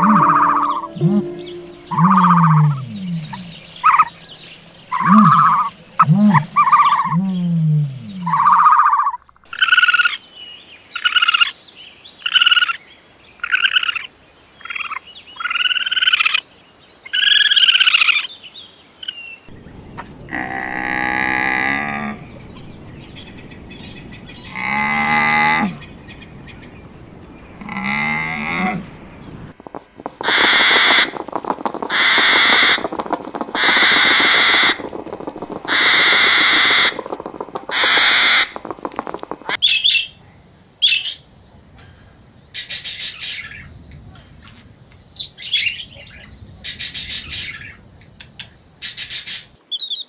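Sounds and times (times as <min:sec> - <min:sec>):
farm animal calls: 0:19.9 - 0:29.5.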